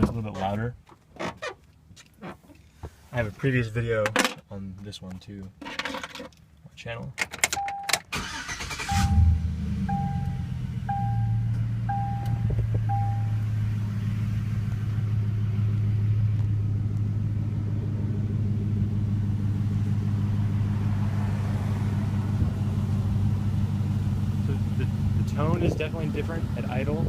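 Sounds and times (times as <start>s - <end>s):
truck engine idling: 8.2s - 27.0s
chime beeping: 8.8s - 13.4s.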